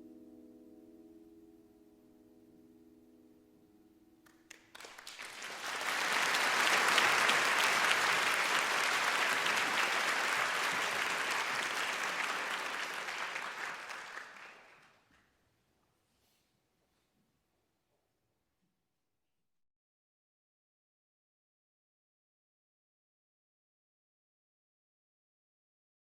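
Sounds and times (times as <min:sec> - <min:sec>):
audience applauding: 0:04.2 - 0:15.0.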